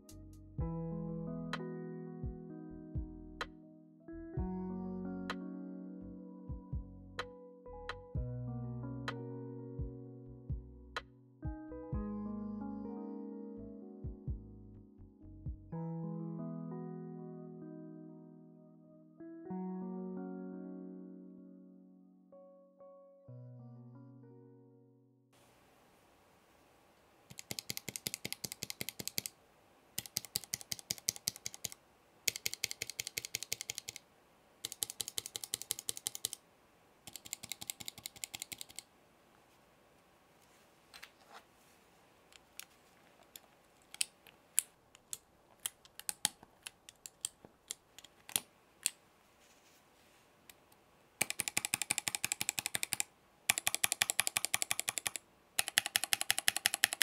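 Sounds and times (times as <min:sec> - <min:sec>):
mechanical keyboard typing: 0:27.3 - 0:29.4, 0:30.0 - 0:34.0, 0:34.6 - 0:36.4, 0:37.1 - 0:38.9, 0:45.0 - 0:49.0, 0:51.2 - 0:57.0.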